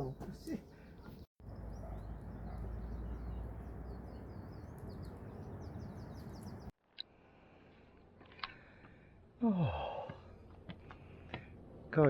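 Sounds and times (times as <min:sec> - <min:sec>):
small birds chirping: 0:00.0 - 0:06.8.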